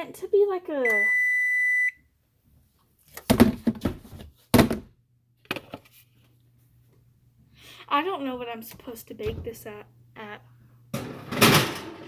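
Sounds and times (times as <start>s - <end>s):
kitchen items thudding and knocking: 3.2s - 5.0s, 10.9s - 12.0s.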